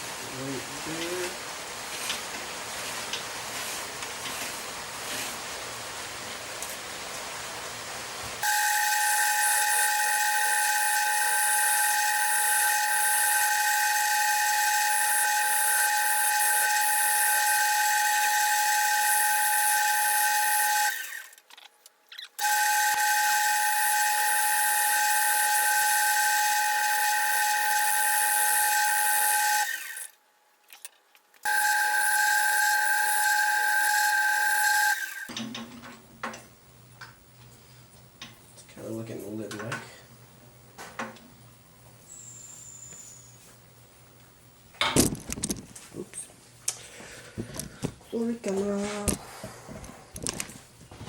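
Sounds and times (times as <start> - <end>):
wood lathe whining: 8.4 - 21.4, 22.4 - 30.1, 31.5 - 35.3.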